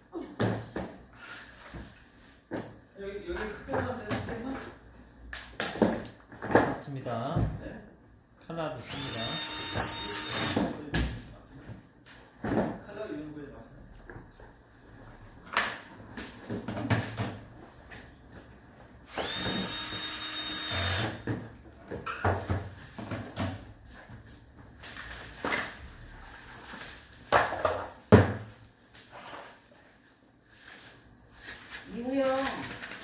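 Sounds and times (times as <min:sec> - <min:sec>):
small electric drill whining: 0:08.8 - 0:10.7, 0:19.1 - 0:21.2.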